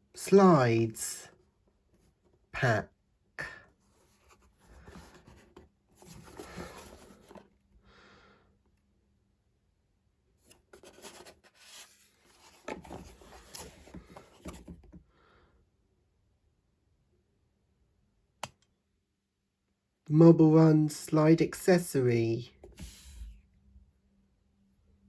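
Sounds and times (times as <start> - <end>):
cardboard packaging rubbing: 4.8 - 7.4.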